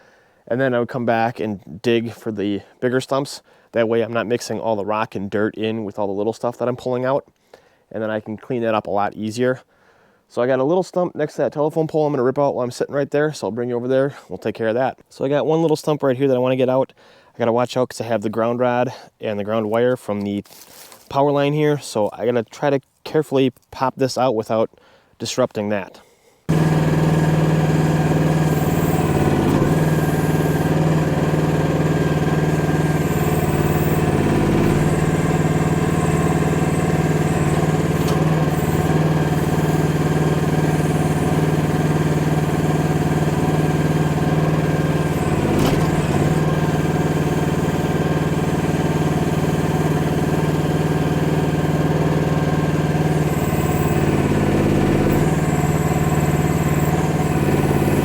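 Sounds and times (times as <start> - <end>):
excavator engine running: 26.5 - 58.0.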